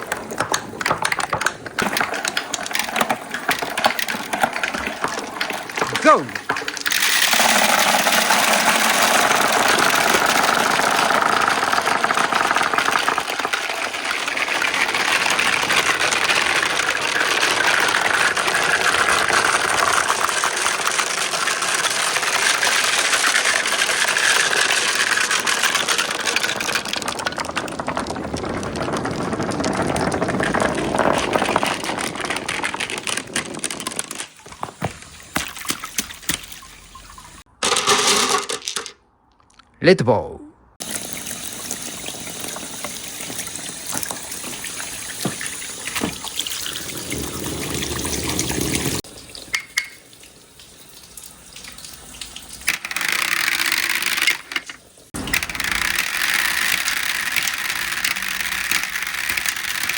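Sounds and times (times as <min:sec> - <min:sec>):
marble rattling down plastic track: 0:00.0 - 0:36.5, 0:37.6 - 0:39.0, 0:52.6 - 0:59.9
water flowing: 0:00.0 - 0:37.5, 0:40.8 - 0:55.6.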